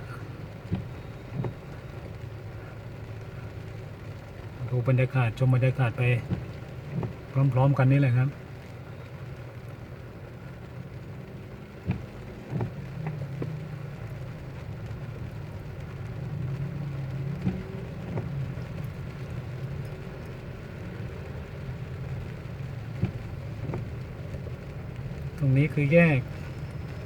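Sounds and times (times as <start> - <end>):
car engine and road drone: 0.0 - 27.0
rain: 0.0 - 27.0.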